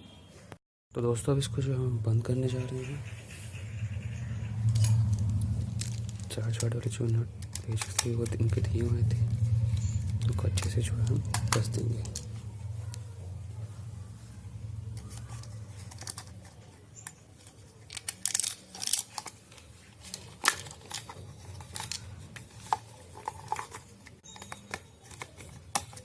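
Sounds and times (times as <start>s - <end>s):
plastic parts clicking and scraping: 4.6s - 13.0s, 14.8s - 26.0s.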